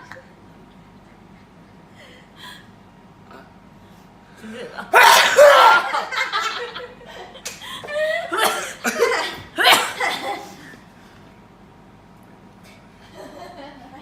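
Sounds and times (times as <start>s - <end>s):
person sneezing: 4.9s - 5.8s, 8.4s - 10.7s.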